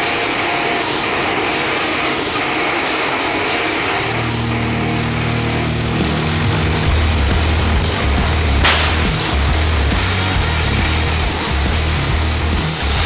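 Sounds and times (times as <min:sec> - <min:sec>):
electric chainsaw running: 0:00.0 - 0:13.0
low steady hum: 0:04.0 - 0:11.2.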